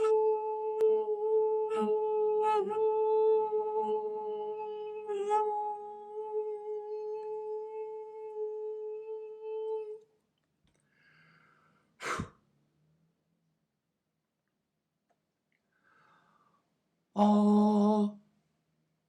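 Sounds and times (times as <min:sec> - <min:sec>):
man singing a long high tone: 0:00.0 - 0:10.0, 0:17.2 - 0:18.2.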